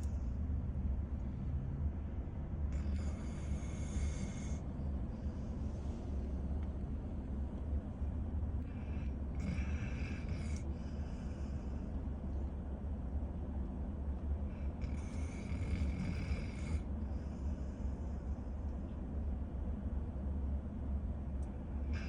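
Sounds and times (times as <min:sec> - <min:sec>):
steady low rumble: 0:00.0 - 0:22.0
cat snoring: 0:02.7 - 0:04.7, 0:08.7 - 0:11.8, 0:14.5 - 0:17.7.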